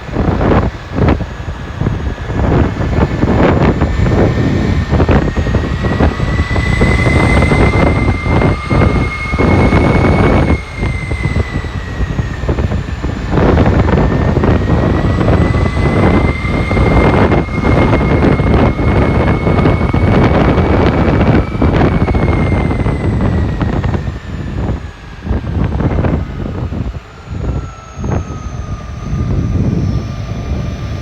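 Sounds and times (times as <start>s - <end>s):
electric motor high whine: 0.0s - 31.0s.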